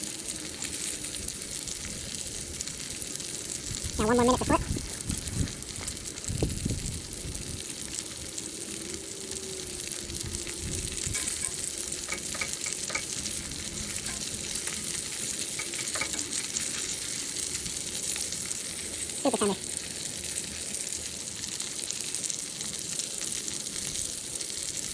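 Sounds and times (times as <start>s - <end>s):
steak sizzling over campfire: 0.0s - 24.9s.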